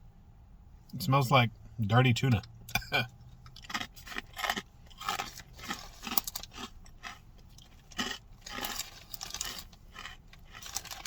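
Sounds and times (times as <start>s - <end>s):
crunching and chewing dry snack: 3.4s - 11.0s.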